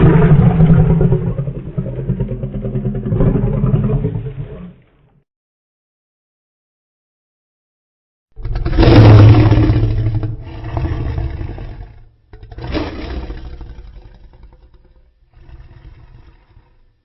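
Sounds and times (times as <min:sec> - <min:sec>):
deep monster roar: 0:00.0 - 0:04.8, 0:08.4 - 0:16.8
faint low growl: 0:08.4 - 0:17.0.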